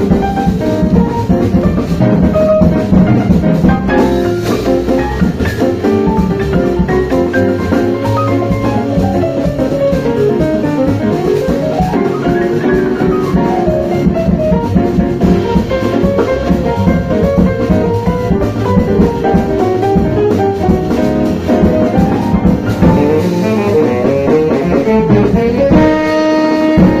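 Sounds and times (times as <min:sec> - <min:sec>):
drum kit: 0:00.0 - 0:27.0
saxophone: 0:22.8 - 0:27.0.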